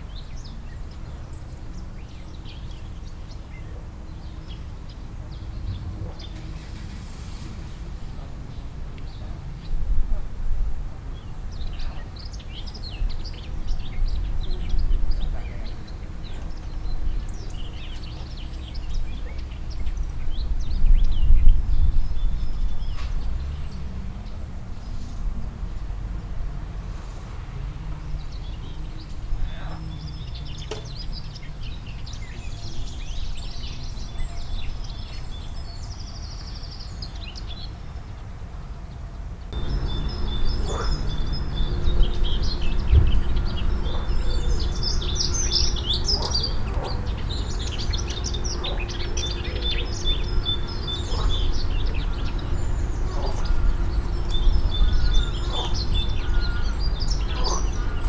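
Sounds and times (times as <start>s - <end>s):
songbirds chirping and trilling: 0.0s - 58.0s
steady low rumble: 39.6s - 58.0s.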